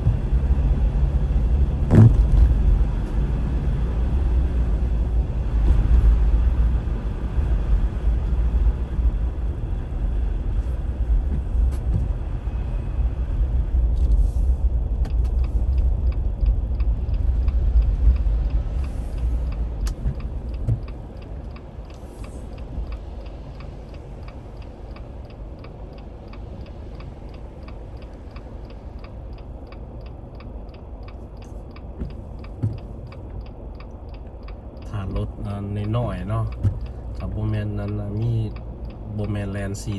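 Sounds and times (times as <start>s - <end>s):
car tyres and engine rumble: 0.0s - 39.9s
evenly spaced ticks: 15.0s - 39.9s.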